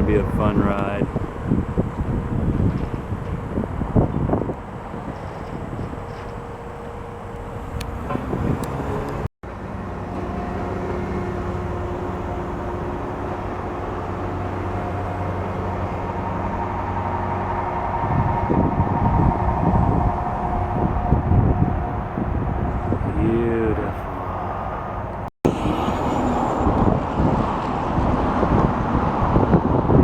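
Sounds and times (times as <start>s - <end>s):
engine hum with held tones: 0.6s - 30.0s
uneven low rumble: 10.0s - 29.6s.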